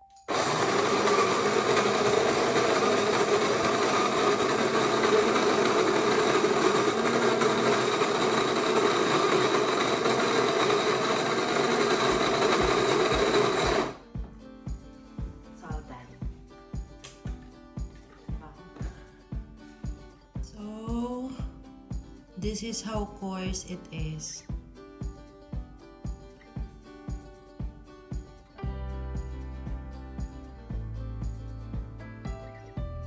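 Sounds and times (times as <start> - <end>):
electric coffee grinder running: 0.3 - 14.0.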